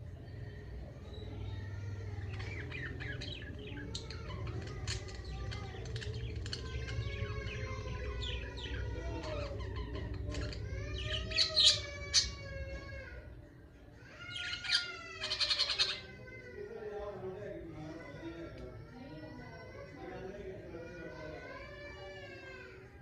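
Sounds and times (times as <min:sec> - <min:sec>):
budgerigars chattering: 0:14.3 - 0:16.1.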